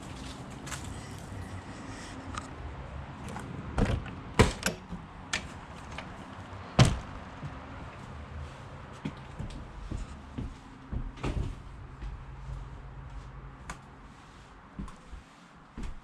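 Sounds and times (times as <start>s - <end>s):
doors and cupboards shutting: 3.3s - 6.2s.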